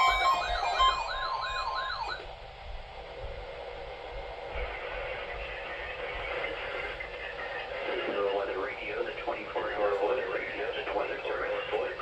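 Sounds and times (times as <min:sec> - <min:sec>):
electronic siren yelping: 0:00.0 - 0:02.2.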